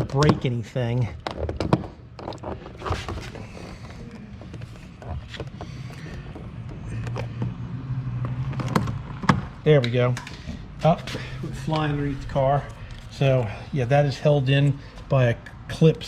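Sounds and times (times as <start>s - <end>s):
low steady hum: 8.6s - 16.0s.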